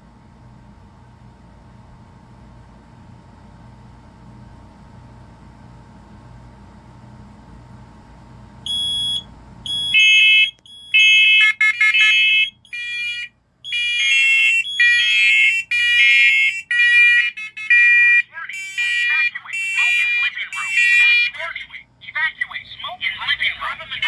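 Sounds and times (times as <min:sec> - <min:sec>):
smoke alarms beeping: 0:08.7 - 0:21.5.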